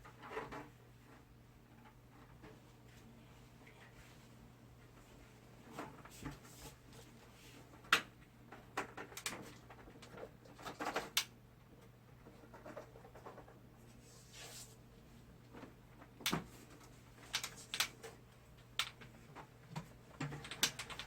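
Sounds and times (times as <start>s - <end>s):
faint steady hum: 0.0s - 21.0s
clicks and knocks of objects handled: 7.7s - 13.5s, 15.4s - 21.0s.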